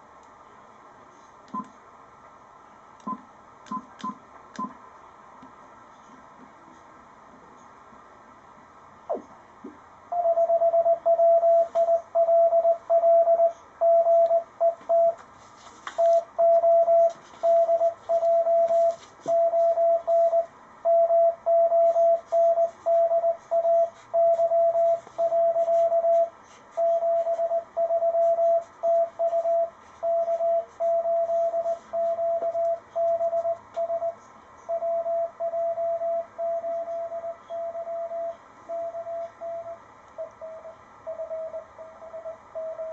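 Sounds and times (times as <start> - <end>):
faint radio hiss: 0.0 - 42.9
morse code tone: 10.1 - 15.2, 16.0 - 42.9.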